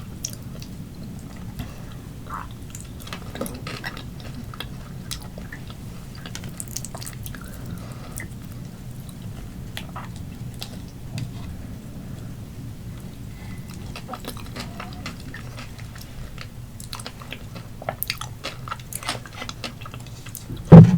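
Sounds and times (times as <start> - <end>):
low steady hum: 20.3 - 20.9.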